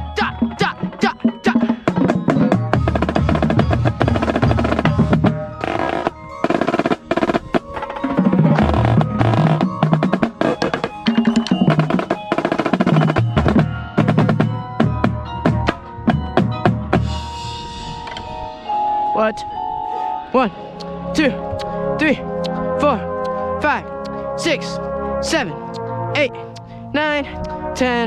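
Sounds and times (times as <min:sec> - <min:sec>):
pitched bass drums: 0:00.0 - 0:18.1.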